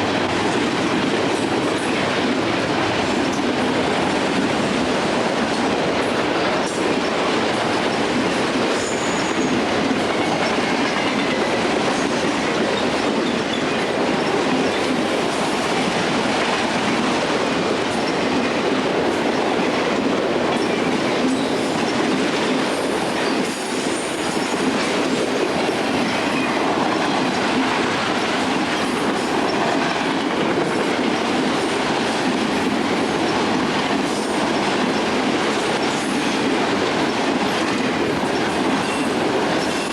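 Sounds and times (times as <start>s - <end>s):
train wheels clicking over rail joints: 0.0s - 39.9s.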